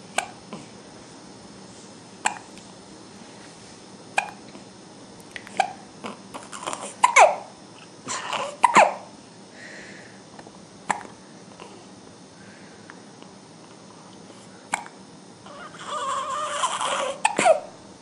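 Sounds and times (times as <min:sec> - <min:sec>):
baby hiccuping: 0:04.2 - 0:04.4, 0:06.6 - 0:07.5, 0:08.3 - 0:09.0, 0:16.6 - 0:17.6.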